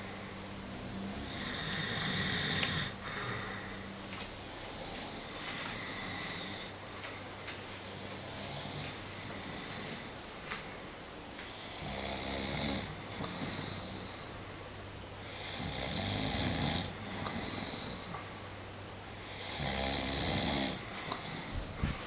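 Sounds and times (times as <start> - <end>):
person snoring: 0.0 - 3.9, 4.5 - 6.7, 8.0 - 10.2, 11.6 - 14.3, 15.2 - 18.2, 19.2 - 21.5.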